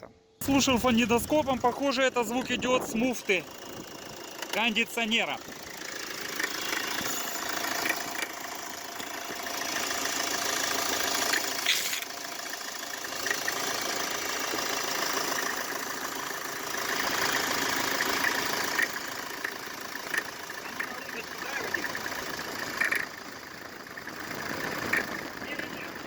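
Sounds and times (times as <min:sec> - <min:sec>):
diesel engine idling: 0:00.4 - 0:26.0.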